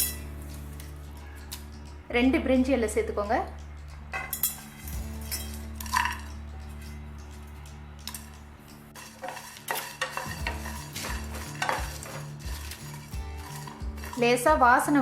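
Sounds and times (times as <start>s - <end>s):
steady low hum: 0.0s - 14.9s
spoon scraping spices in pan: 3.6s - 15.0s.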